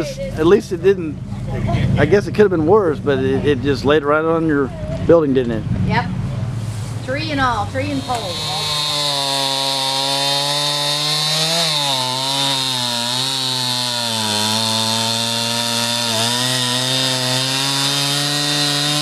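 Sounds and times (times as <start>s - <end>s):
chainsaw cutting wood: 7.6s - 19.0s.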